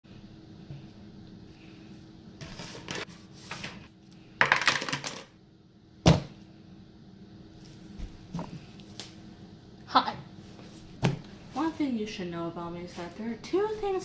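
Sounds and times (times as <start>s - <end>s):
rustling and scraping: 2.4s - 3.9s.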